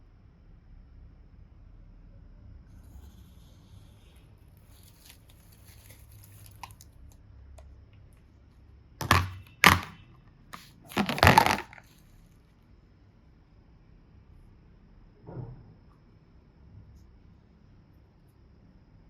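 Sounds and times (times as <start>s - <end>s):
crinkling crushing scrunches: 4.8s - 6.9s, 10.6s - 12.0s.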